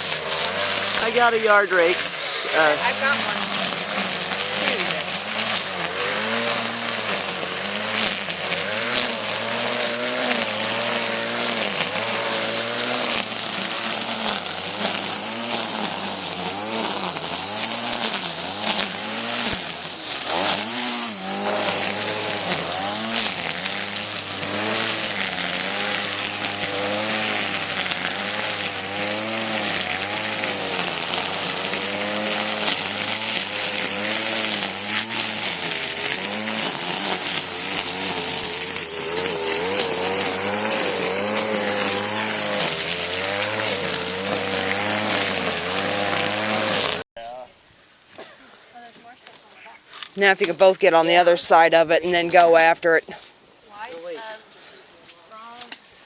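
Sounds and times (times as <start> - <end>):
small engine revving: 0.0 - 47.1
steady hiss: 0.0 - 56.0.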